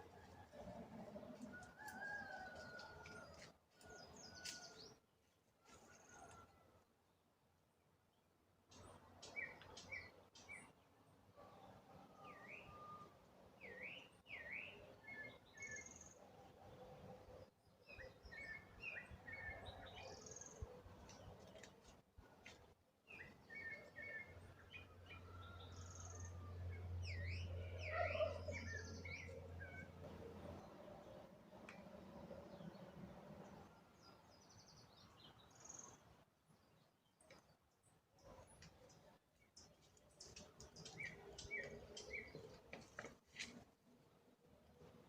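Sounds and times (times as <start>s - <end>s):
birds chirping: 38.2s - 43.6s.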